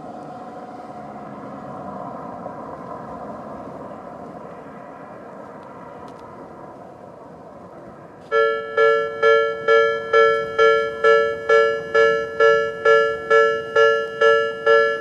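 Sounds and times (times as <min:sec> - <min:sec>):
level crossing alarm two-note ding: 0:08.3 - 0:15.0.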